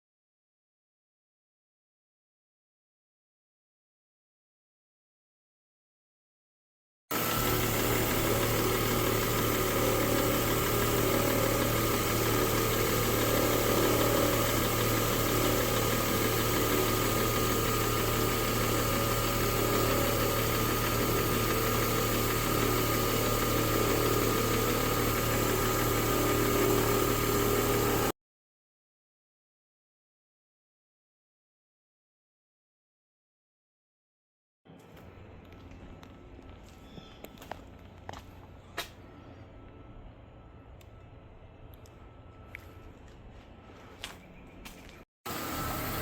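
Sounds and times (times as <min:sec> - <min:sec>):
car engine idling: 0:07.1 - 0:28.1.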